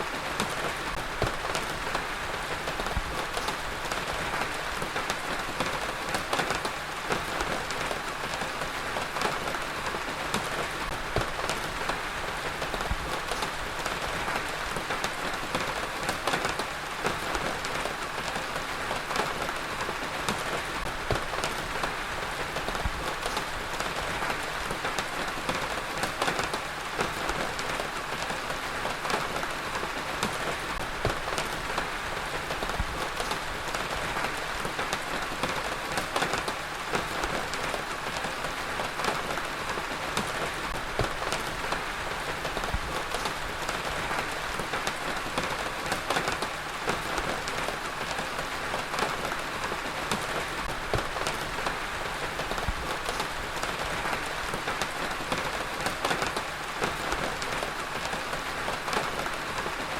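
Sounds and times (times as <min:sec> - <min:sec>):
heavy rain: 0:00.0 - 0:59.9
raindrops pattering on hard surface: 0:00.3 - 0:59.9.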